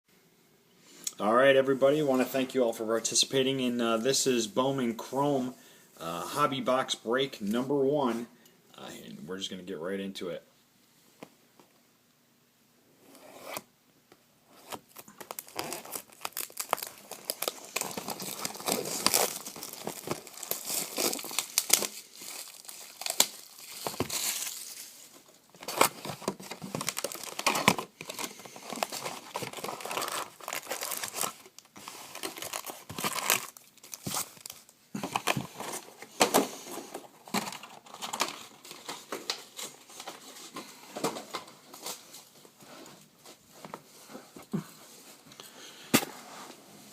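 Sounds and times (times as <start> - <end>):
plastic wrapping crinkling: 14.6 - 45.4.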